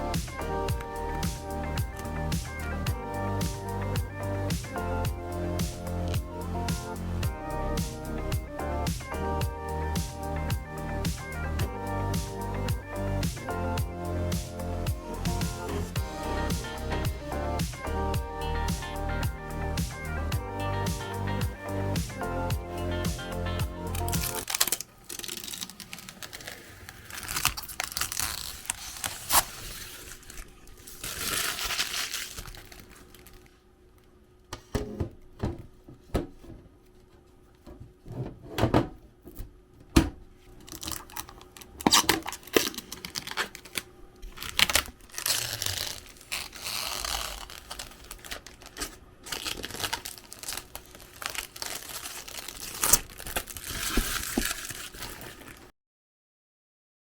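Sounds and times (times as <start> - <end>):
crinkling and tearing: 23.9 - 33.6, 40.5 - 55.7.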